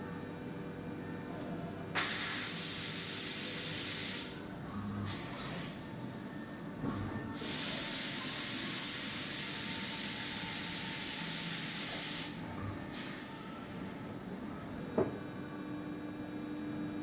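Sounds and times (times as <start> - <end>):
air hissing inside machine: 2.0 - 4.4, 7.4 - 13.8.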